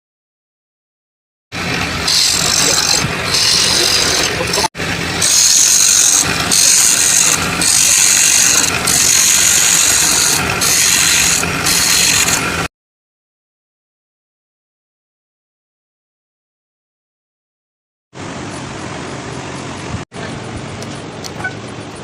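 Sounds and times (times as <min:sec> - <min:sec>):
power tool cutting wood: 0:01.6 - 0:12.7.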